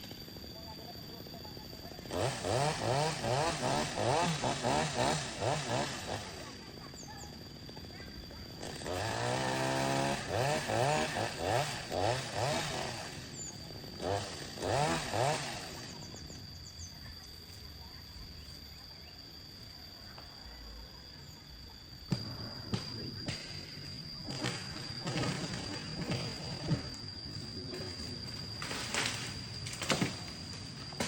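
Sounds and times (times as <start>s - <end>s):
chainsaw revving: 2.0s - 16.7s, 23.2s - 31.0s.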